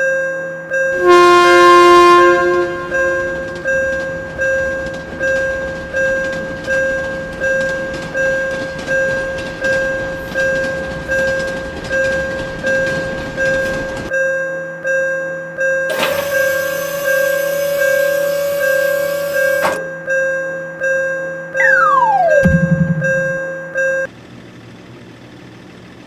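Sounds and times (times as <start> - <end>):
railroad crossing bell dinging: 0.0 - 14.2, 15.6 - 23.6
noisy rumble: 21.7 - 23.6.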